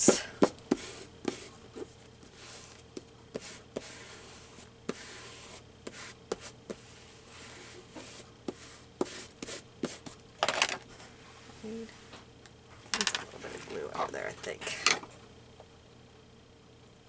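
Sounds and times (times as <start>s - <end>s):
fingers and tools tapping paper: 0.4s - 10.2s
hands rubbing paper: 0.7s - 10.2s.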